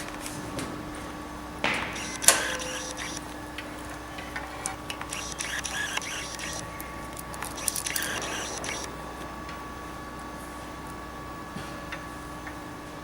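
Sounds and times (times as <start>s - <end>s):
equipment hum: 0.0s - 13.0s
clicks of cable connectors: 2.0s - 3.2s, 4.2s - 8.9s.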